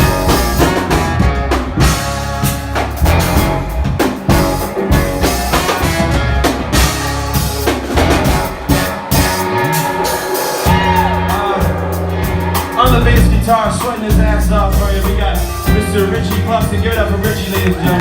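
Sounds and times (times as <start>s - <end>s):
drum kit beat: 0.0s - 18.0s
live band playing: 0.0s - 18.0s
guitar solo: 8.7s - 13.2s.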